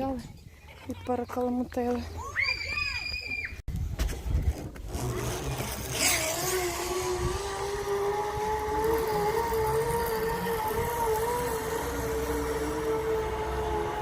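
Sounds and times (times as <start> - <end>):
motor drone rising in pitch: 4.9 - 14.0.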